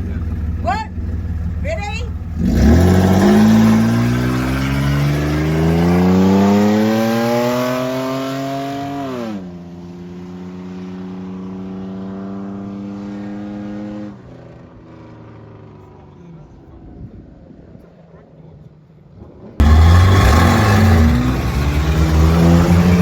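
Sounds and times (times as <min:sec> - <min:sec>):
engine revving hard: 0:01.6 - 0:09.4, 0:19.6 - 0:23.0.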